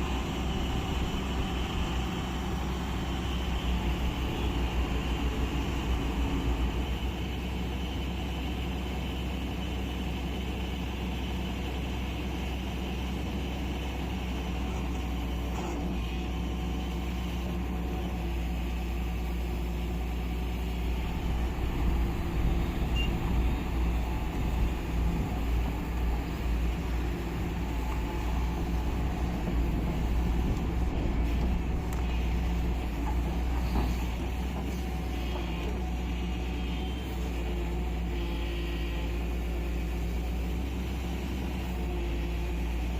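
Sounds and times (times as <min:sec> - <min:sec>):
diesel engine running: 0:00.0 - 0:42.9.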